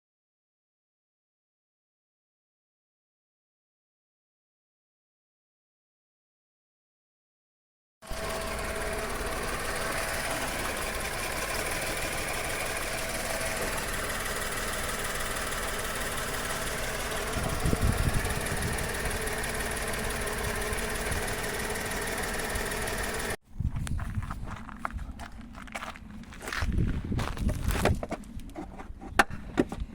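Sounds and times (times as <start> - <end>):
misfiring petrol engine idling: 8.0 - 23.4.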